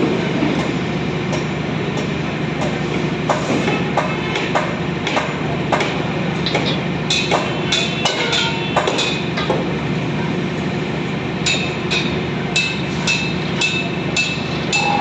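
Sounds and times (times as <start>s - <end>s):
metal striking rebar: 1.4s - 9.5s, 11.4s - 15.0s.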